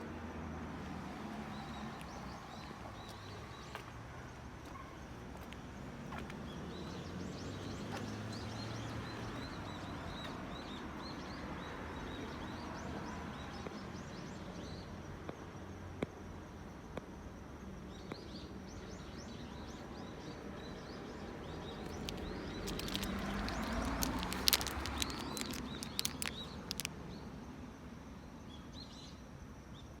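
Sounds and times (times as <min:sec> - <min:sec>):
small birds chirping: 0:17.9 - 0:27.3
sharp clicks: 0:21.8 - 0:26.9.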